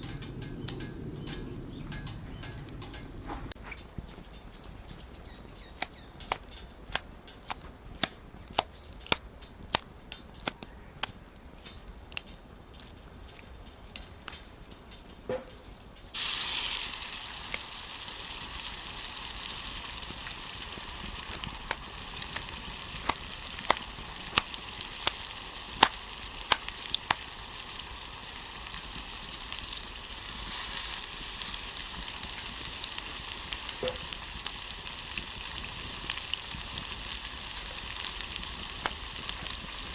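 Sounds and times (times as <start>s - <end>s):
wood fire crackling and popping: 0.0s - 39.9s
food sizzling in a pan: 16.1s - 39.9s.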